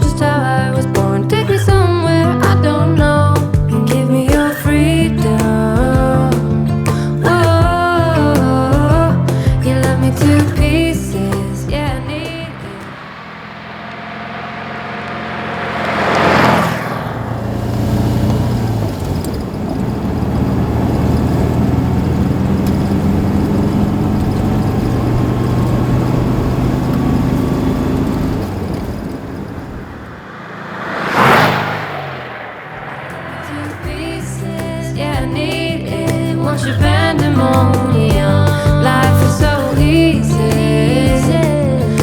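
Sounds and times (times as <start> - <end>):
car engine running: 0.0 - 42.0
loud whooshes: 10.4 - 18.9, 28.5 - 36.0.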